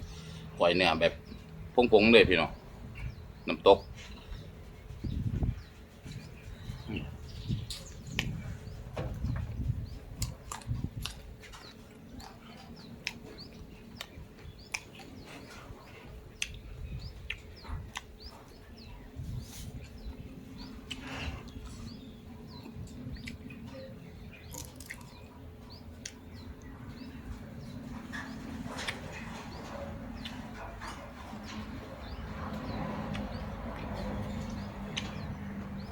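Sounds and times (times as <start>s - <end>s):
small birds chirping: 0.0s - 35.9s
person chewing and eating: 10.2s - 15.2s, 16.3s - 18.3s, 20.8s - 21.8s, 24.4s - 25.3s.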